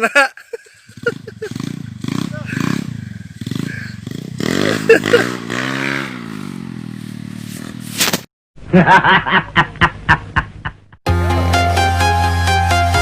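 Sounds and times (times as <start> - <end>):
rhythmic laughter: 0.0 - 1.8, 4.8 - 5.4
motorcycle engine revving: 0.8 - 8.1.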